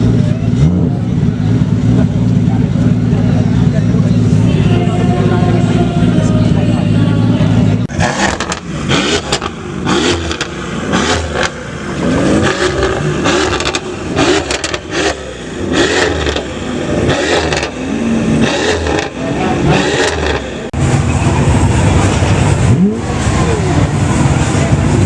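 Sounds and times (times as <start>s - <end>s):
car engine revving: 0.0s - 25.0s
exhaust pops and crackles: 7.7s - 17.8s.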